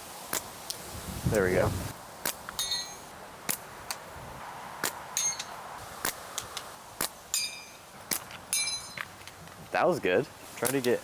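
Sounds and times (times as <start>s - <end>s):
metallic ping of ball on target: 2.6s - 3.0s.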